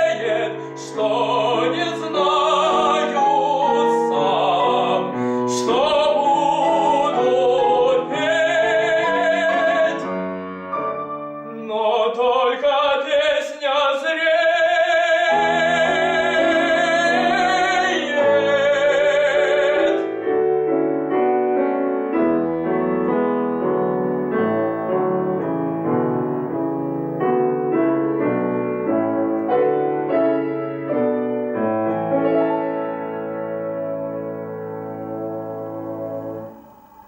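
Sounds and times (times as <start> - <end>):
classical singer with vibrato: 0.0 - 25.6
piano accompaniment: 0.0 - 37.0.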